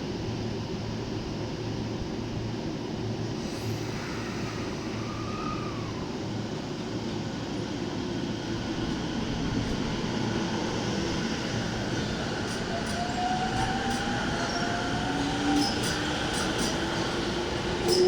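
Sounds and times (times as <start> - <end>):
faint short whine: 3.4 - 6.5.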